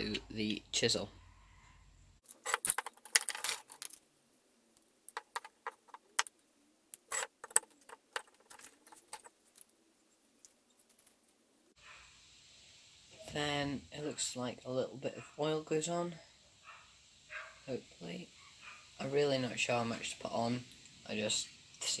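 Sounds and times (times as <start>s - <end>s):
metal clicking and rattling: 2.2s - 4.0s, 5.1s - 6.3s, 7.0s - 9.7s.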